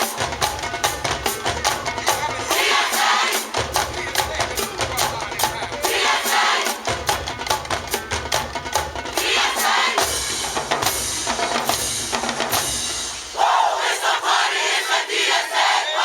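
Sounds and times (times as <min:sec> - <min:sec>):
marching band playing: 0:00.0 - 0:15.3
drums beating fast rhythm: 0:00.0 - 0:15.4.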